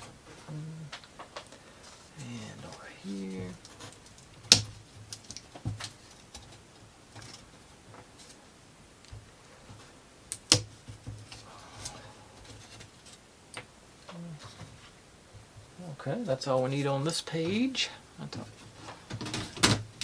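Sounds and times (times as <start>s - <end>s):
wooden parts clicking and tapping: 0.0s - 8.4s.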